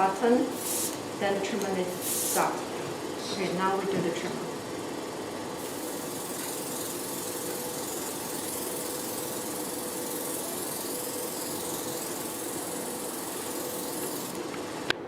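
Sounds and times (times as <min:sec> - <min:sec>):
mist spraying hiss: 0:01.9 - 0:02.6
pump humming: 0:04.2 - 0:15.0.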